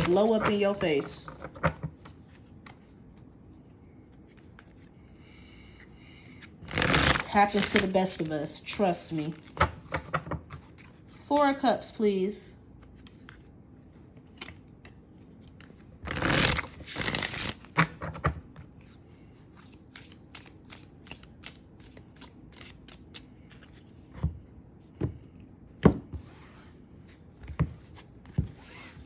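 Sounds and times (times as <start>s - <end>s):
cards being shuffled: 6.4s - 8.3s, 14.2s - 24.3s.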